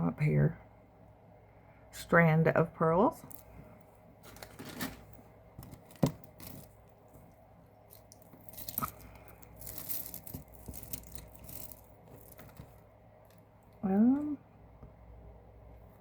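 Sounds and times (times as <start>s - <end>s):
jewelry rustling: 3.2s - 13.8s
beads and metal pieces clicking: 7.9s - 13.4s.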